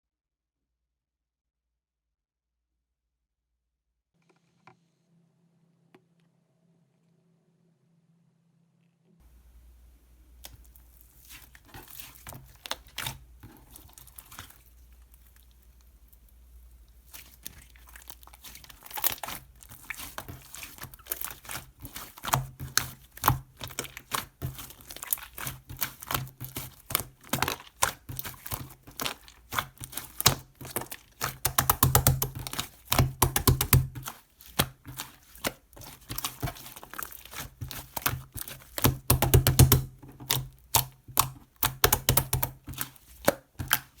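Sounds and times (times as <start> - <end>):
crinkling and tearing: 10.4 - 44.0
sharp clicks and taps: 31.4 - 34.0, 38.8 - 43.9.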